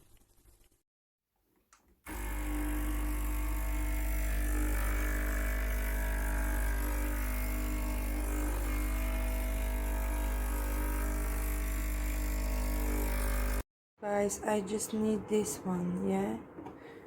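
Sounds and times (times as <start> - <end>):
espresso machine pump humming: 2.1 - 13.6.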